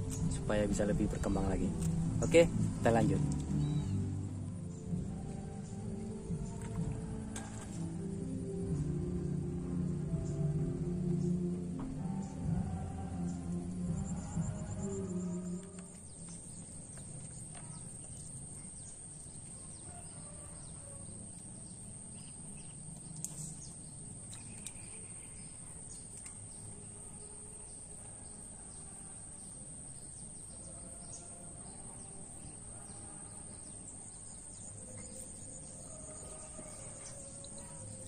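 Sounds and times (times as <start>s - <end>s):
bird chirps: 1.2s - 4.1s.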